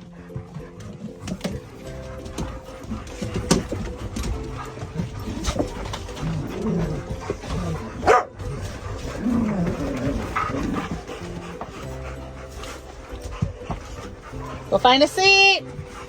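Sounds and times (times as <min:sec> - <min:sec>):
dogs whining and grumbling: 0:00.0 - 0:16.0
dog barking: 0:01.3 - 0:11.4.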